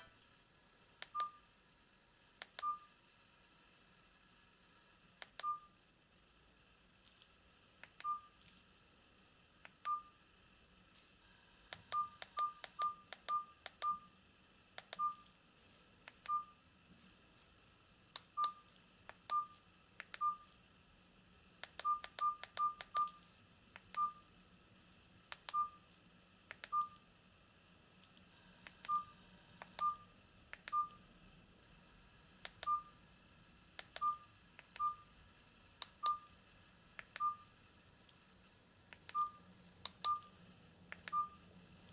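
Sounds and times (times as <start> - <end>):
keypad beeps: 1.0 - 1.4, 2.4 - 2.9, 5.2 - 5.7, 8.0 - 8.4, 9.8 - 10.2, 11.8 - 14.1, 14.8 - 15.3, 16.1 - 16.6, 18.3 - 20.5, 21.7 - 23.2, 23.8 - 24.3, 25.4 - 25.8, 26.5 - 27.0, 28.8 - 31.0, 32.5 - 33.0, 33.8 - 35.1, 35.8 - 36.4, 37.0 - 37.5, 39.1 - 40.4, 41.0 - 41.4.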